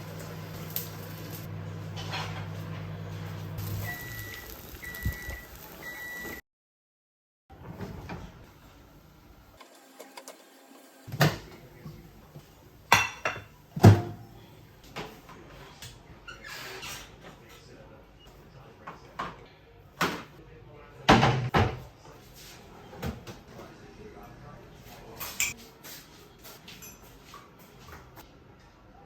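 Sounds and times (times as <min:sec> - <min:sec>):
microwave humming: 0:00.0 - 0:06.4.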